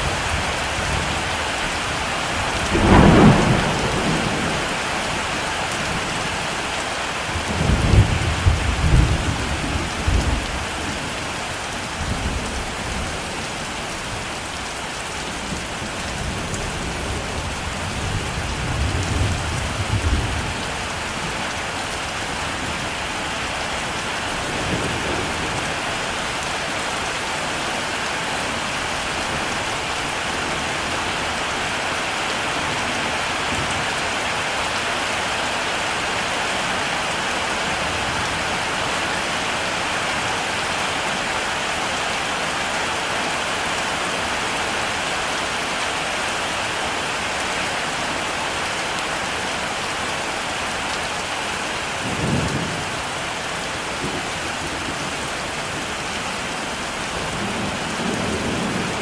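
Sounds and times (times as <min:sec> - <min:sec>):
heavy rain hissing: 0:00.0 - 0:59.0
low thunder rumble: 0:02.4 - 0:05.3.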